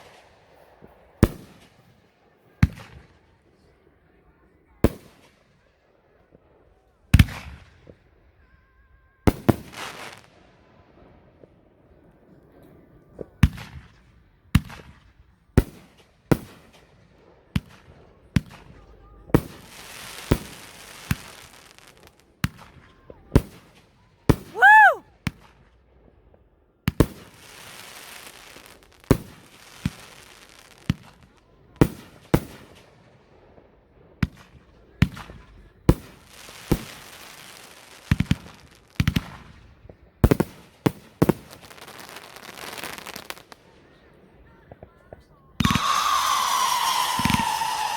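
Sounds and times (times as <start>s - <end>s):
fireworks crackling: 0.0s - 1.9s, 19.4s - 22.6s, 24.4s - 25.0s, 27.0s - 32.6s, 36.0s - 39.5s, 40.3s - 43.7s, 45.6s - 47.9s
fireworks bangs: 24.3s - 25.0s, 45.6s - 47.9s
firework whistle: 24.5s - 25.0s, 45.6s - 47.9s.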